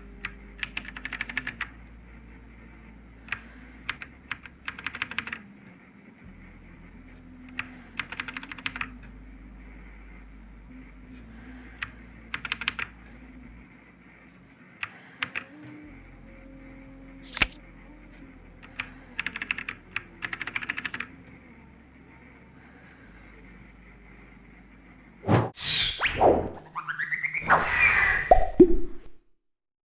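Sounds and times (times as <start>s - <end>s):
mechanical keyboard typing: 0.6s - 1.7s, 3.3s - 5.4s, 7.6s - 8.9s, 12.3s - 12.9s, 14.8s - 15.5s, 17.2s - 17.6s, 18.6s - 21.1s.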